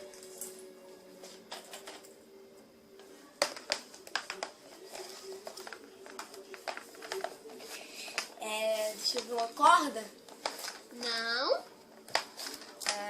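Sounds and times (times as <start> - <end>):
objects clicking and knocking: 3.4 - 8.4.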